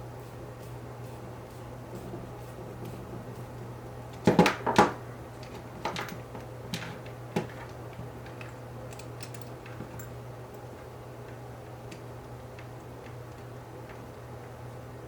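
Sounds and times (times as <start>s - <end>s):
low hum: 0.0s - 4.3s.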